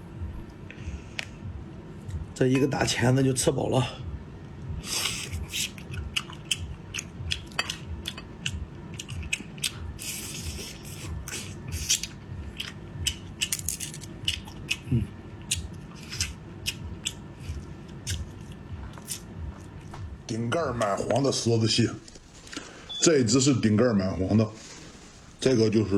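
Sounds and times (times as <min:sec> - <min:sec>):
wet chewing: 0:04.9 - 0:20.1
crab shell cracking: 0:11.9 - 0:14.8.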